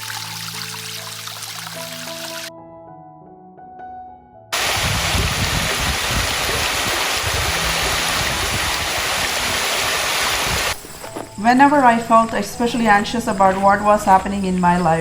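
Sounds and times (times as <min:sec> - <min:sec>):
creek water rushing: 0:04.6 - 0:11.2.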